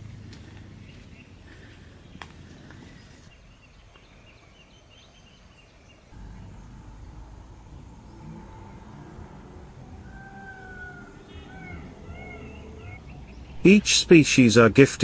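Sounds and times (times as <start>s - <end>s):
faint bird calls chirping: 0.0s - 15.0s
low rumble: 6.2s - 14.4s.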